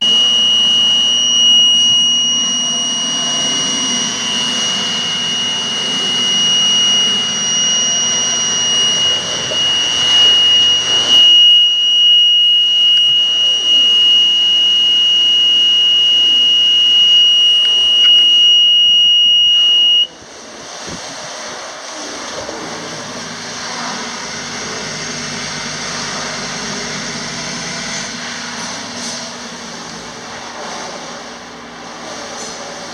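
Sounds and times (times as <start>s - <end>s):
high-pitched alarm tone: 0.0s - 20.1s
machinery noise: 0.0s - 32.9s.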